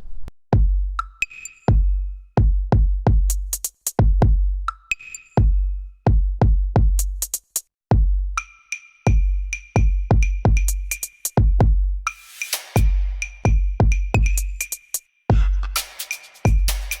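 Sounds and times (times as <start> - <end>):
electronic music with drum-machine beat: 12.5 - 17.0.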